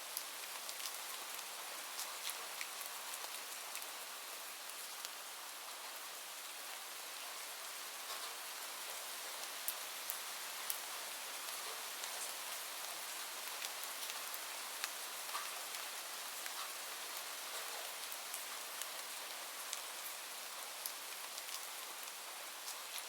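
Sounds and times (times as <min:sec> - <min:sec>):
rain hiss: 0:00.0 - 0:23.0
raindrops ticking on hard surface: 0:00.1 - 0:04.0, 0:17.4 - 0:23.0.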